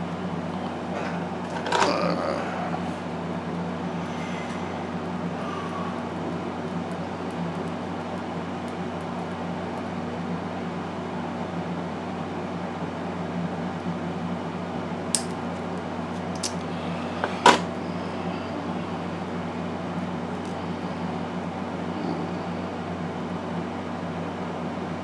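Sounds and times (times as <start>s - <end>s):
fan humming: 0.0s - 24.9s
plastic parts clicking: 15.2s - 15.4s, 16.4s - 16.6s.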